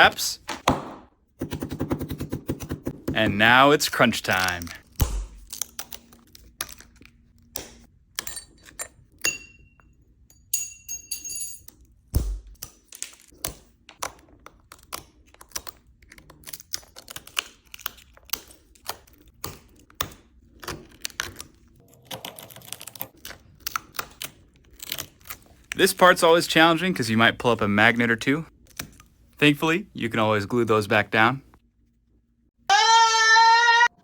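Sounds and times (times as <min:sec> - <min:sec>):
glass crunching and clicking: 0:22.3 - 0:25.4.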